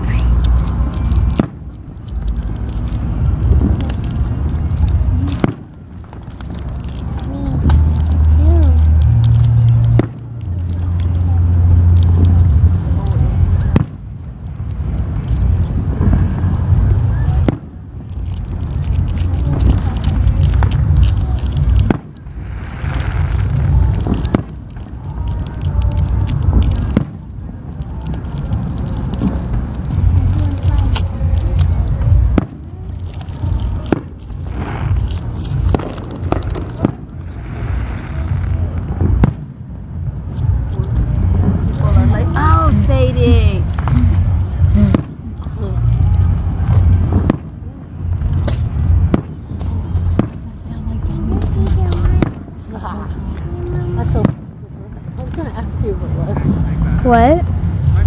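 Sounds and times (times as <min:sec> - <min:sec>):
sharp fireworks bangs: 0:00.0 - 0:52.8
fireworks booming: 0:00.0 - 0:58.0
fireworks crackling: 0:00.0 - 0:58.0
heavy low rumble: 0:00.0 - 0:58.0.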